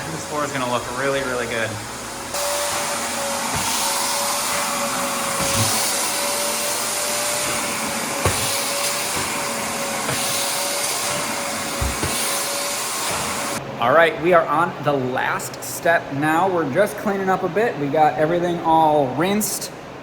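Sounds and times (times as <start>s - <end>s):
electric motor whining: 2.3s - 13.6s.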